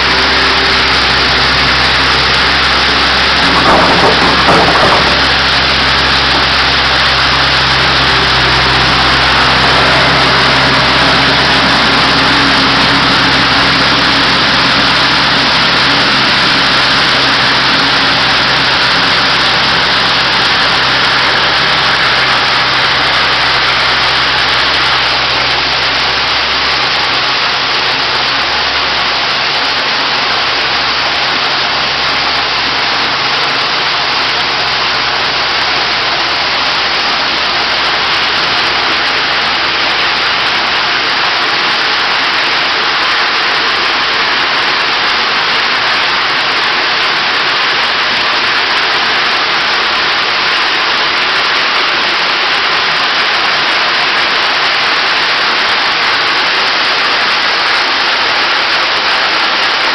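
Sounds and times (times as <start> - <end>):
low rumble: 0.0 - 29.3
waterfall rushing into pool: 0.0 - 59.9.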